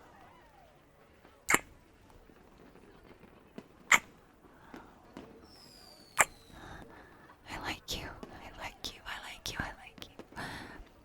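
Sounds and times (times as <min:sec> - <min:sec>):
faint falling whistle: 0:05.4 - 0:06.6
kisses into microphone: 0:06.2 - 0:06.4.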